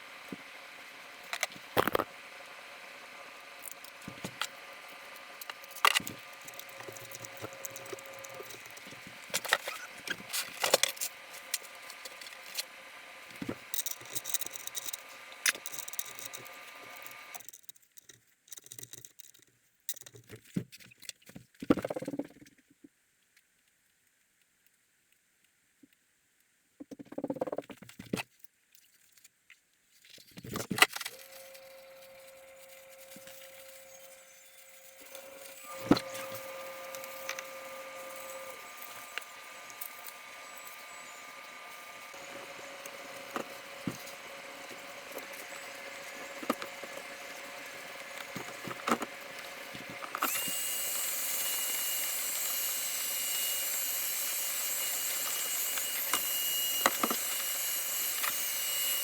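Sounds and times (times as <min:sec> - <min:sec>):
small power tool running: 0:00.0 - 0:17.4, 0:31.1 - 0:59.0.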